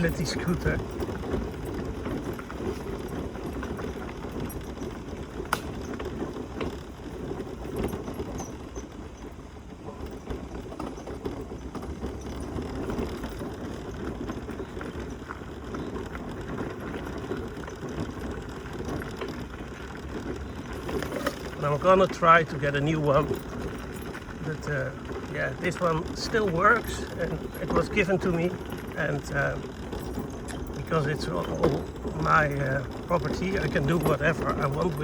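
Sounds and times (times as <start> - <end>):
mobility scooter rattling: 0.0 - 35.0.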